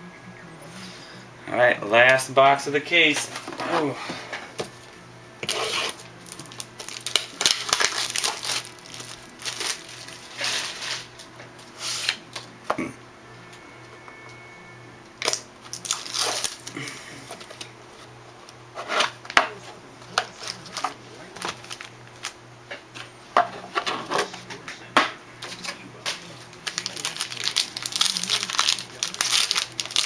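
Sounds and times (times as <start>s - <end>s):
plastic wrapping crinkling and tearing: 5.4s - 12.2s, 15.2s - 17.6s, 20.3s - 22.4s, 25.4s - 30.0s.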